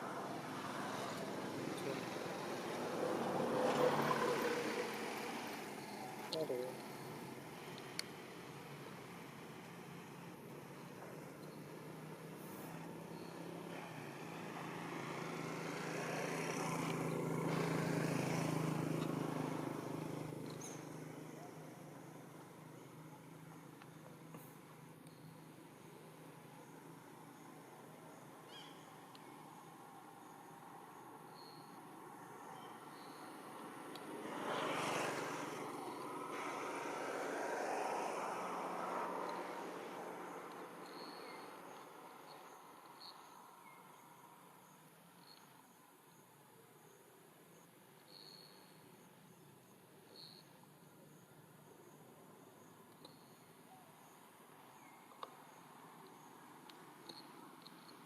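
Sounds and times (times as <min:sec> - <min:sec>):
passing vehicle motor: 0:00.0 - 0:07.0
vehicle passing: 0:00.0 - 0:08.8, 0:12.4 - 0:21.7, 0:33.0 - 0:42.7.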